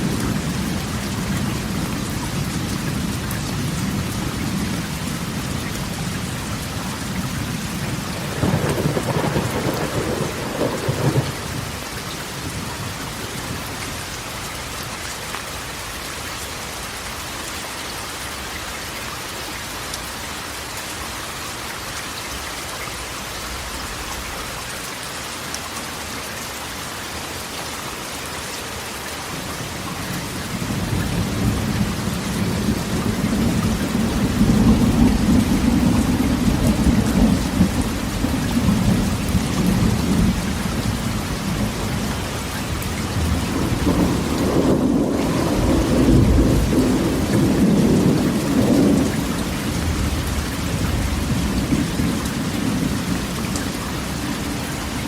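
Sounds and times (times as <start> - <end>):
thunder rumbling: 0.0 - 13.8, 30.5 - 55.0
rain on a metal roof: 0.0 - 55.0.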